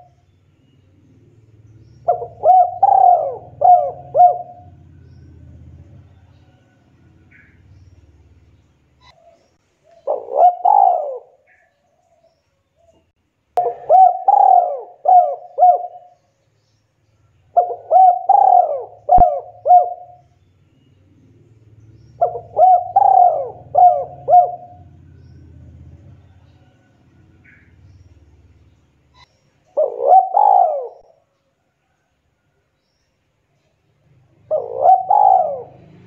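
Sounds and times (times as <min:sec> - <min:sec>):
dove cooing: 0:01.9 - 0:07.6, 0:09.0 - 0:11.7, 0:13.6 - 0:16.2, 0:17.5 - 0:20.3, 0:22.1 - 0:28.0, 0:29.2 - 0:31.2, 0:34.3 - 0:36.0.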